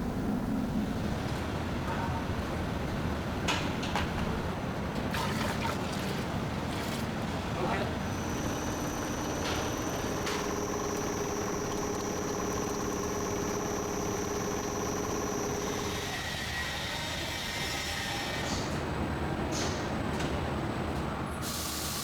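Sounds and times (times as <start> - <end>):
machinery rumble: 0.0 - 17.4
machinery high whine: 7.6 - 18.6.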